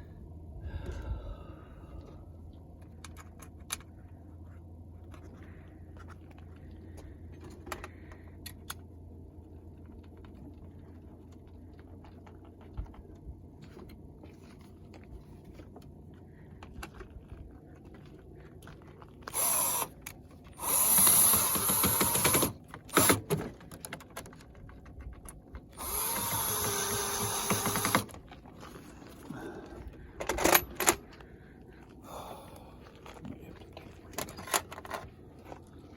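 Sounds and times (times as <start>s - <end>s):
cordless drill driving screws: 19.3s - 20.0s, 20.6s - 23.4s, 25.8s - 28.2s.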